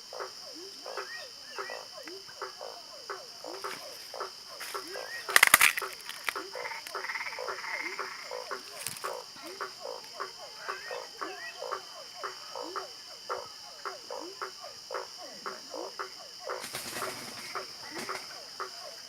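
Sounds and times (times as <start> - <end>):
chorus of frogs calling: 0.0 - 19.0.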